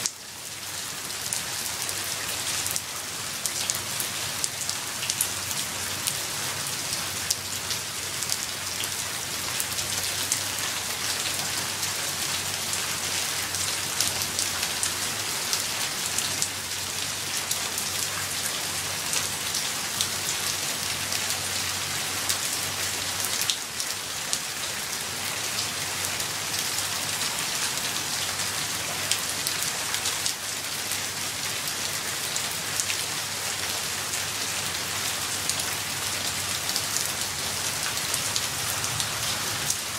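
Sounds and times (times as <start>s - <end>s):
steady rain hiss: 0.0s - 39.9s
raindrops ticking nearby: 1.2s - 24.5s.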